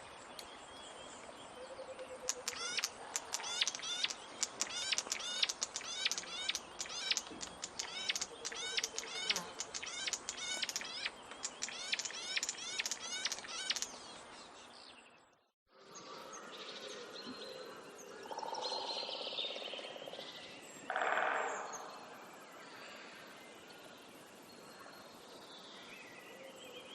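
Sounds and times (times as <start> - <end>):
scattered bird calls: 0.0 - 15.3
chorus of birds chirping: 0.0 - 26.9.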